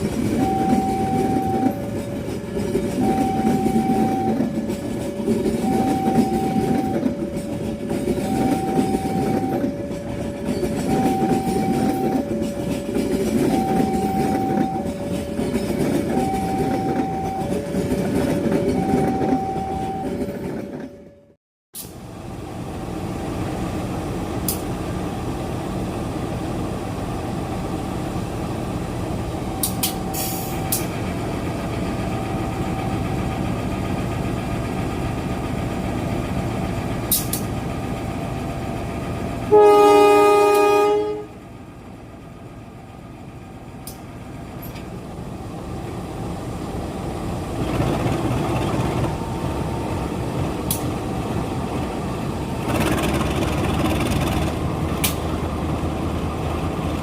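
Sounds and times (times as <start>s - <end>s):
train rumbling on track: 0.0s - 57.0s
train horn blast: 39.5s - 41.4s.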